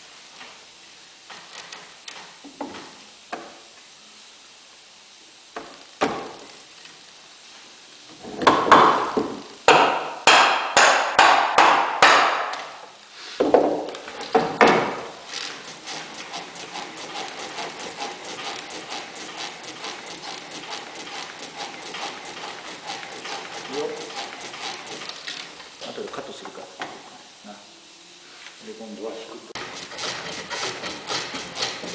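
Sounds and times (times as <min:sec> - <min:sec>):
hammer striking wood: 0:05.6 - 0:06.3, 0:08.4 - 0:12.8, 0:13.4 - 0:15.0.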